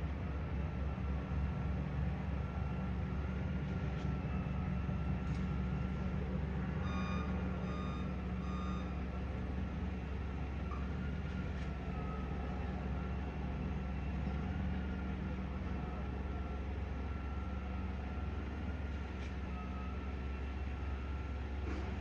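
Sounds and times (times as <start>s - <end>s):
diesel engine rumbling: 0.0s - 22.0s
backup alarm beeps: 6.8s - 9.0s.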